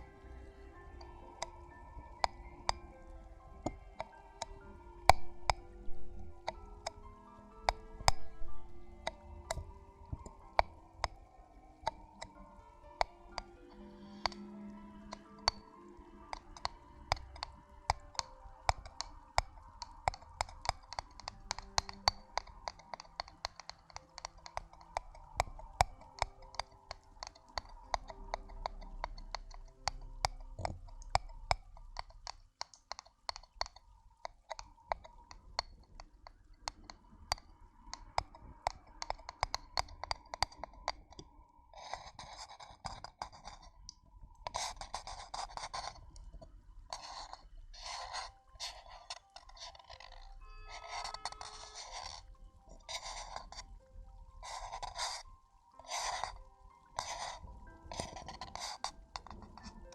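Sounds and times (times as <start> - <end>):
crisp clicks and scratches: 7.6 - 53.8, 54.4 - 59.9.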